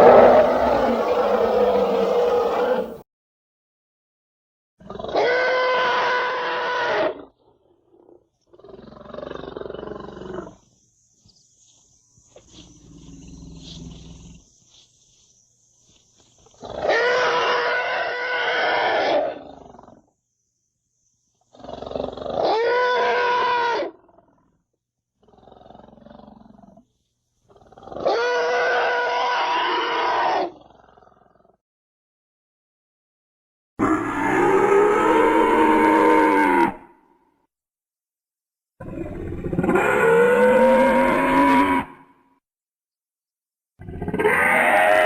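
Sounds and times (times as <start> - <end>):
loud drawn-out dinosaur calls: 0.0 - 3.0, 33.8 - 37.0, 39.5 - 42.2, 43.9 - 45.0
quieter low dinosaur calls: 0.0 - 3.0, 38.8 - 42.1.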